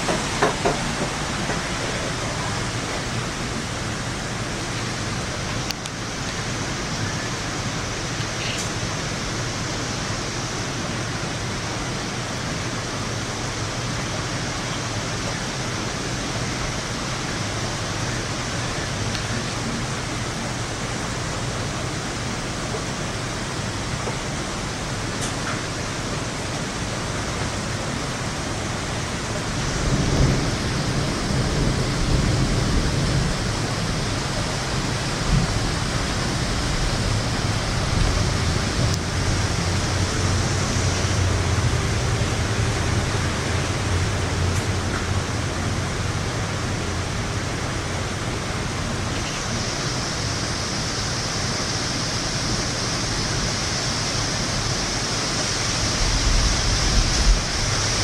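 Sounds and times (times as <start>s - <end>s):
steady rain hiss: 0.0s - 58.0s
low roll of thunder: 29.5s - 40.0s.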